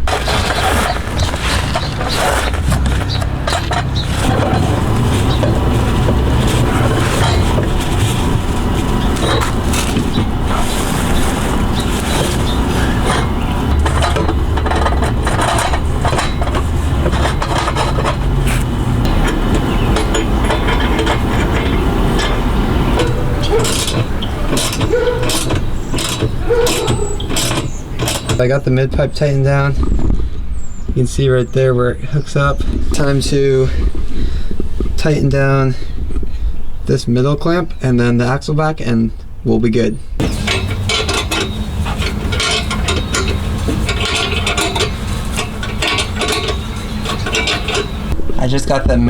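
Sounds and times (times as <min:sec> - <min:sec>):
low rumble: 0:00.0 - 0:23.5
wrench clicking and scraping: 0:00.0 - 0:28.4, 0:40.2 - 0:48.2.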